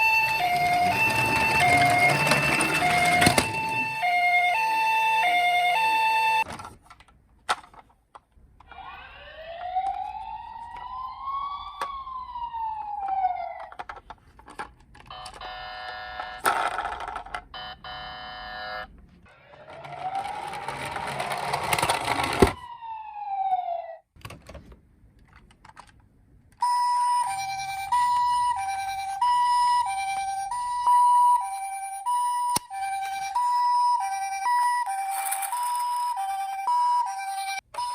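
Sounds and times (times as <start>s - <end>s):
two-tone toy ambulance siren: 0.0s - 6.5s, 8.6s - 14.0s, 15.0s - 24.0s, 26.6s - 37.9s
wailing toy siren: 0.0s - 6.5s, 8.6s - 13.9s, 15.1s - 16.7s, 17.6s - 24.0s, 26.6s - 37.9s
stacked beeping tones: 15.0s - 16.5s, 17.4s - 18.9s.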